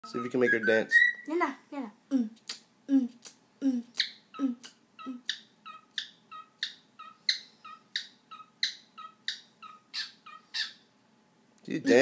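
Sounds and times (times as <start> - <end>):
bird chirps: 0.0 - 1.3, 5.0 - 10.9.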